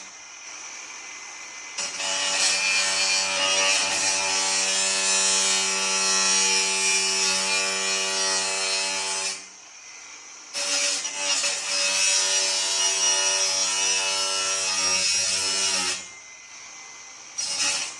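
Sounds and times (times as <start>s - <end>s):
power tool cutting sheet metal: 1.8s - 9.5s, 10.5s - 16.2s, 17.4s - 17.9s.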